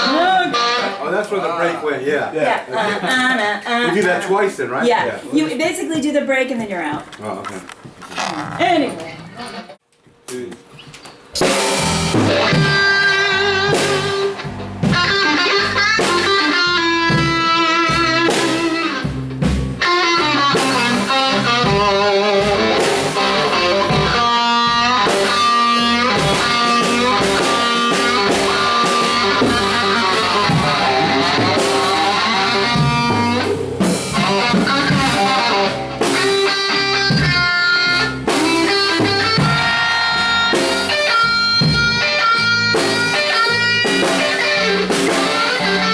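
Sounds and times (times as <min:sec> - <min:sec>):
electric guitar: 0:00.0 - 0:01.0, 0:11.4 - 0:45.9
drum kit beat: 0:11.2 - 0:45.9.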